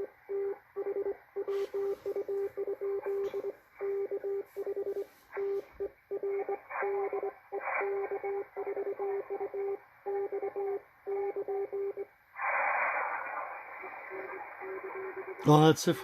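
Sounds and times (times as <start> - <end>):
morse code beeps: 0.0 - 12.0
radio band hiss: 1.4 - 5.8, 12.4 - 16.0.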